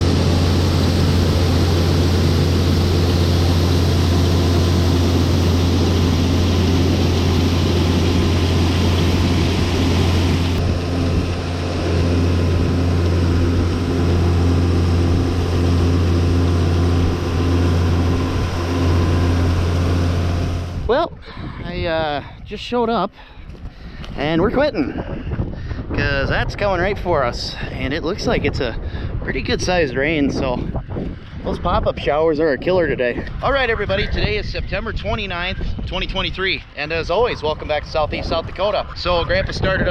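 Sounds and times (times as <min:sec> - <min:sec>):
farm vehicle engine droning: 0:00.0 - 0:21.0.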